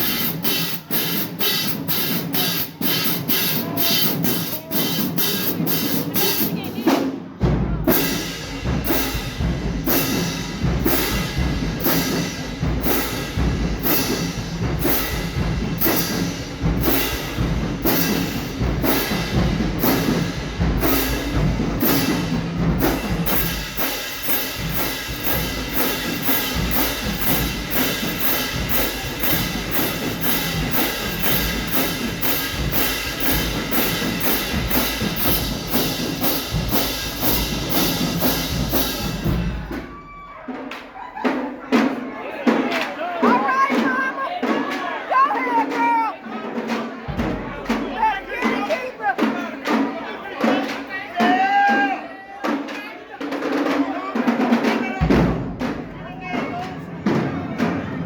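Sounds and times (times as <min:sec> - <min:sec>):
drums and cymbals beat: 0:00.0 - 0:58.0
marching band playing: 0:00.0 - 0:58.0.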